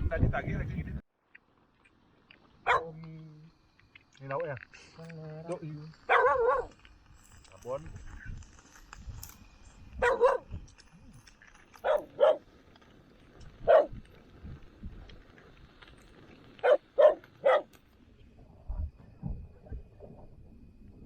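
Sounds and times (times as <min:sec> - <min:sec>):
dog barking: 0:02.6 - 0:03.0, 0:06.1 - 0:06.8, 0:10.0 - 0:10.5, 0:11.8 - 0:12.4, 0:13.6 - 0:14.0, 0:16.6 - 0:17.7.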